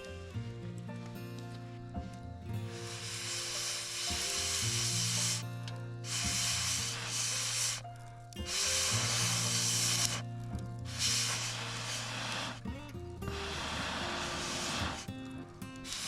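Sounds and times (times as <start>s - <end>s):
background music with bass notes: 0.0s - 16.0s
food sizzling in a frying pan: 6.1s - 7.8s.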